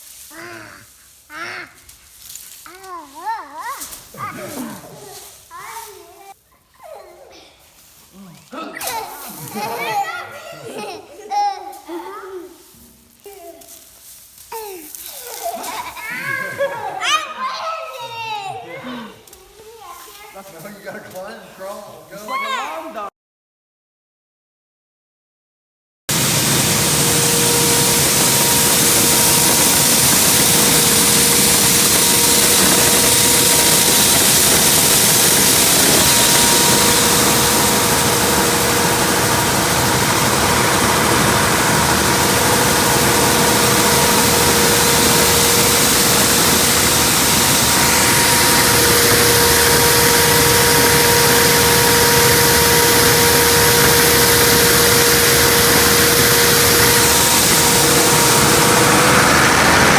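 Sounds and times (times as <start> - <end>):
combine harvester running: 26.1 - 59.9.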